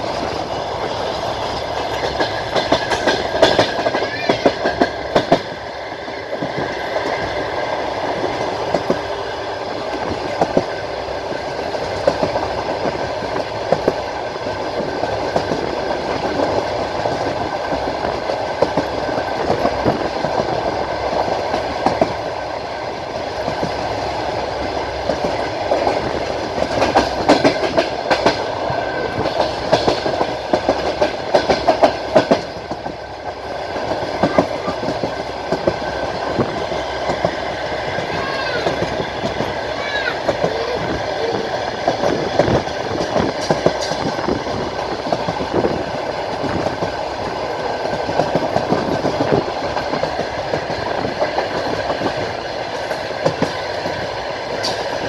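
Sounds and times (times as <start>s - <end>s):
rail joint clicks: 0.0s - 55.0s
train wheels clattering on rails: 0.0s - 55.0s.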